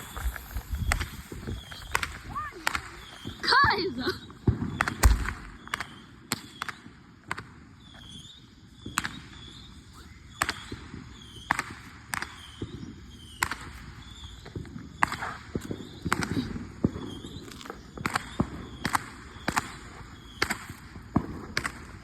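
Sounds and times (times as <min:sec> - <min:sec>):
fireworks bangs and pops: 0:00.0 - 0:22.0.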